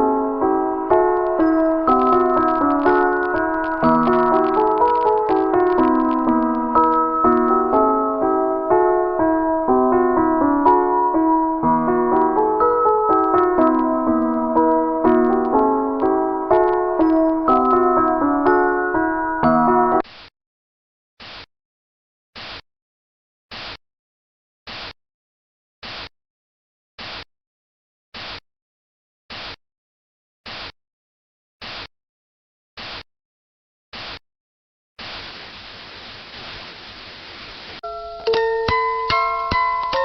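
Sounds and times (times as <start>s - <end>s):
keyboard jingle: 0.0s - 20.0s, 37.8s - 40.0s
music: 0.0s - 20.0s, 37.8s - 40.0s
electronic static bursts: 1.8s - 7.5s.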